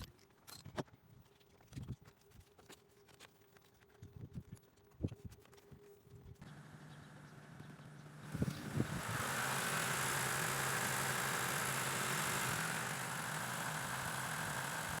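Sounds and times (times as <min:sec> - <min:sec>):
car engine idling: 0:06.4 - 0:15.0.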